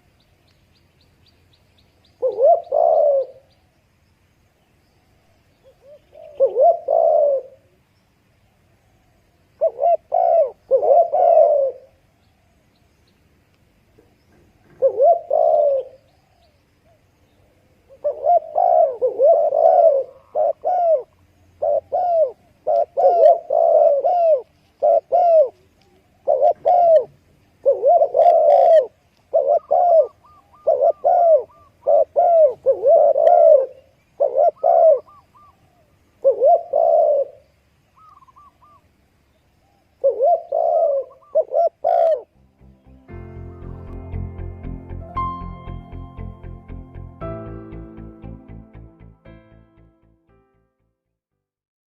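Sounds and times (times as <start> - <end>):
dove cooing: 2.2 - 3.5, 5.6 - 7.8, 9.6 - 12.0, 14.3 - 17.0, 17.8 - 38.9, 39.6 - 42.3.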